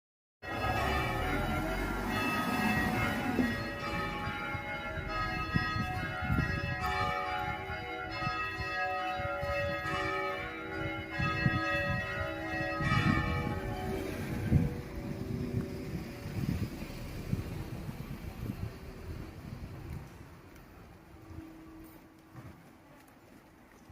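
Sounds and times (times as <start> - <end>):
church bells ringing: 0.4 - 19.4.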